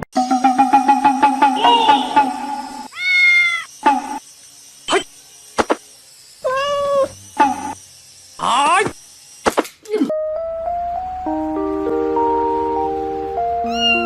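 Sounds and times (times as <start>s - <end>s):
cat meowing: 2.9s - 3.7s, 6.4s - 7.1s, 13.6s - 14.0s.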